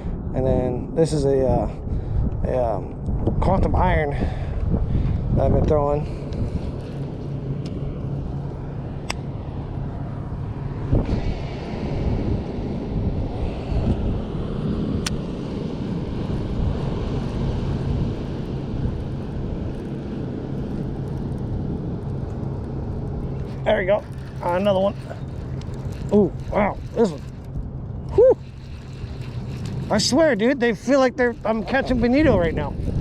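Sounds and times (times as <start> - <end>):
motor droning: 14.1 - 33.0.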